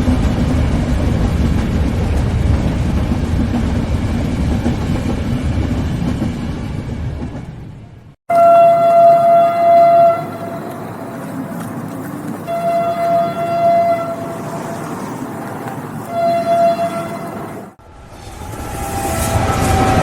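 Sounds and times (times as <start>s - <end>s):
train running rumble: 0.0s - 8.2s, 9.6s - 20.0s
train horn blasts: 8.3s - 10.8s, 12.4s - 14.7s, 16.1s - 17.4s.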